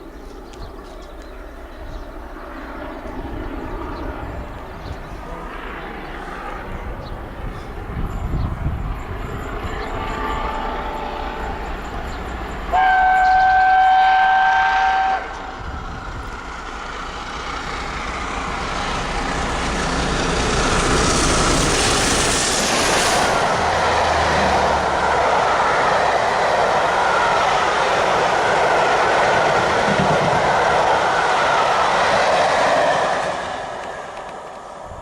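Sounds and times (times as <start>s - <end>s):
approaching train rumble: 0.0s - 35.0s
steam locomotive whistle: 10.0s - 11.8s, 12.6s - 15.5s.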